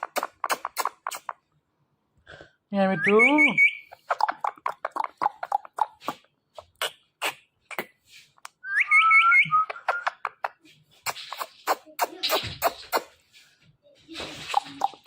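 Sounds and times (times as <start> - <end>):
parrot chattering: 0.0 - 1.5, 3.0 - 7.9, 8.9 - 13.2, 14.3 - 15.0
parrot whistled call: 8.6 - 10.1.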